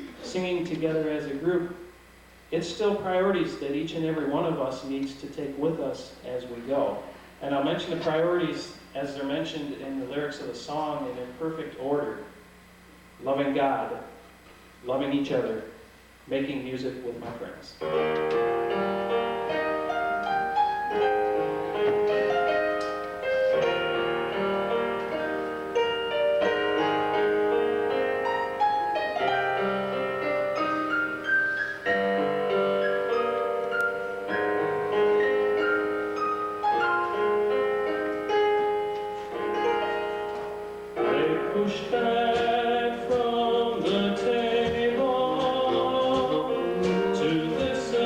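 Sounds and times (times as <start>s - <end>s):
gospel piano chords: 16.7s - 48.0s
person singing: 41.0s - 48.0s.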